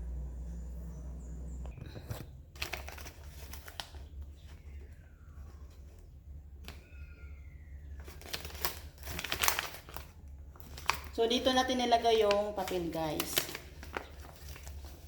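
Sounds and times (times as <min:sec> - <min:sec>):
low steady hum: 0:00.0 - 0:15.0
paper rustling: 0:01.9 - 0:06.0, 0:08.0 - 0:15.0.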